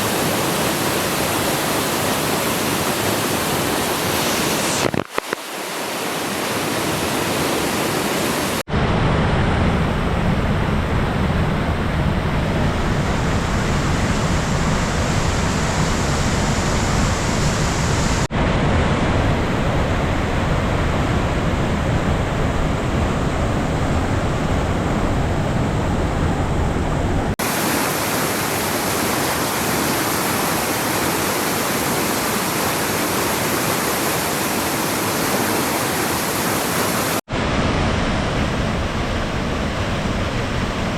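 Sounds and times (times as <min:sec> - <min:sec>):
waterfall rushing: 0:00.0 - 0:08.7, 0:27.4 - 0:40.5.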